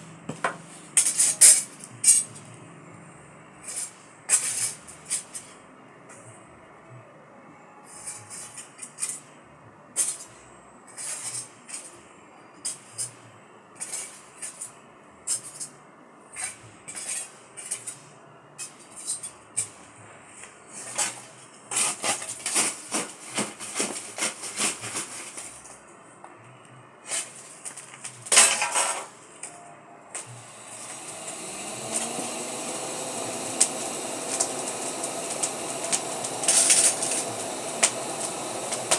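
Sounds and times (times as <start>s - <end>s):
machine hum spinning up: 30.2s - 38.9s.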